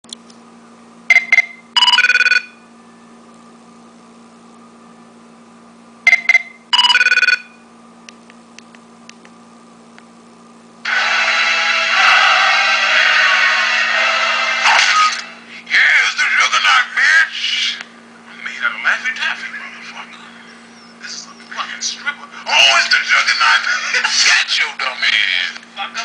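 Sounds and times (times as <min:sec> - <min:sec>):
electronic phone ringtone: 0:01.1 - 0:02.6, 0:06.1 - 0:07.6
loud rush of noise: 0:10.9 - 0:15.5.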